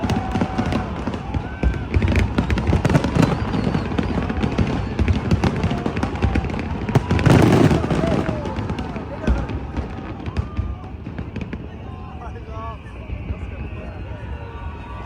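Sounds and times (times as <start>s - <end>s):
fireworks crackling bangs: 0.0s - 13.8s.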